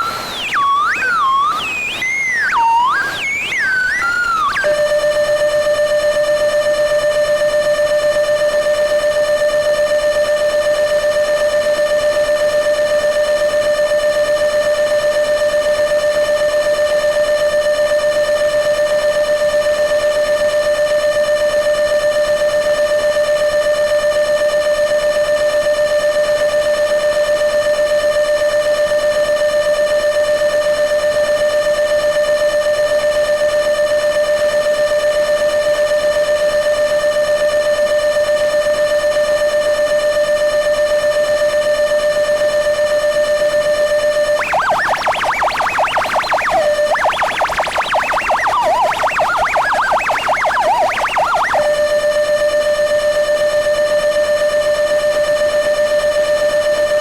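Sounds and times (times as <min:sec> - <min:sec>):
synthesizer steady tone: 0:44.2 - 0:52.0.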